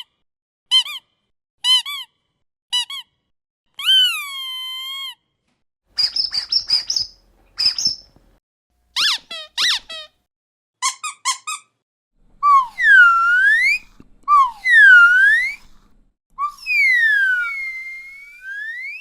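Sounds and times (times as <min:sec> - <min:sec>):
toy squeaky chirps: 0:00.7 - 0:02.1, 0:02.7 - 0:03.1, 0:03.8 - 0:05.2, 0:06.0 - 0:08.2, 0:09.0 - 0:10.2, 0:10.8 - 0:11.8
swooping whistle-like tones: 0:06.0 - 0:08.0, 0:12.4 - 0:15.7, 0:16.4 - 0:19.0.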